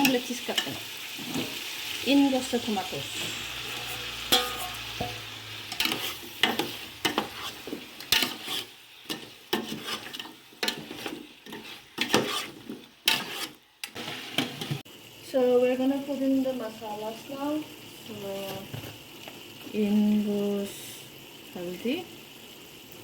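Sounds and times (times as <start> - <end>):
food sizzling in hot oil: 0.0 - 23.0
spoon scraping and knocking pot: 3.3 - 13.6.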